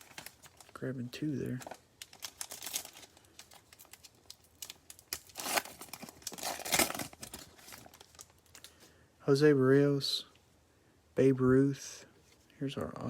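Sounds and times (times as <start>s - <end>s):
plastic wrapper crinkling and tearing: 0.0s - 8.8s.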